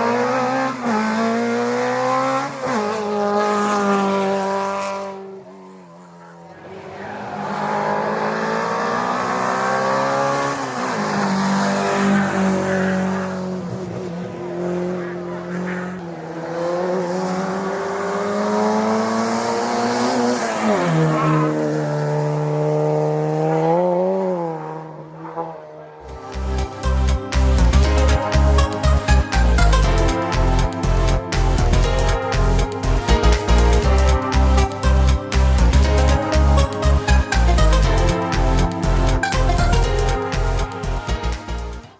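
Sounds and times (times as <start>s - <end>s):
racing car engine accelerating past: 0.0s - 31.2s.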